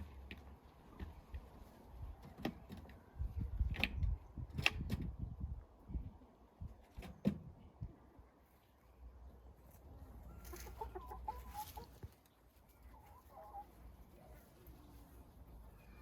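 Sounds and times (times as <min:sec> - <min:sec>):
hens clucking: 0:09.8 - 0:16.0.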